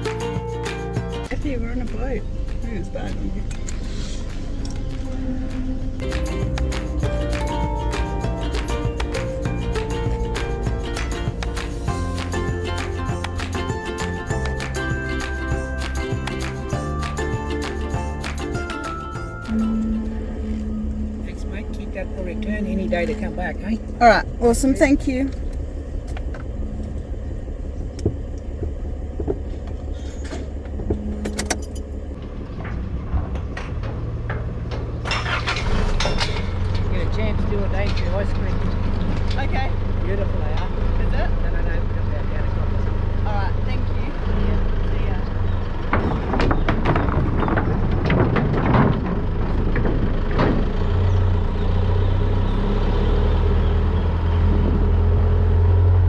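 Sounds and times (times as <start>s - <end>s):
car engine rumble from inside: 0.0s - 56.0s
sharp knocks and clicks: 27.8s - 35.2s, 45.6s - 51.1s.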